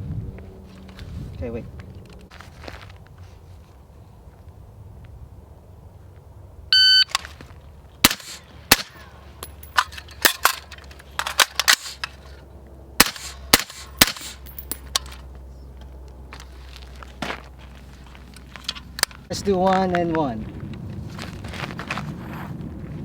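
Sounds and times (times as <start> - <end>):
shot timer beep: 6.8 - 7.1
rifle shots: 8.0 - 10.6, 13.0 - 14.7.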